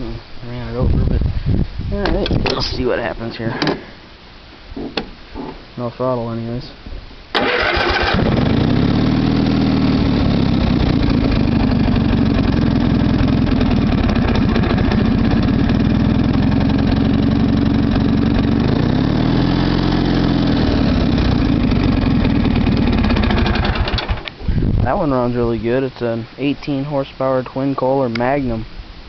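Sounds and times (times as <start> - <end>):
starter cranking engine: 7.4 - 18.9, 20.0 - 24.3
mower engine running and revving: 7.4 - 24.2.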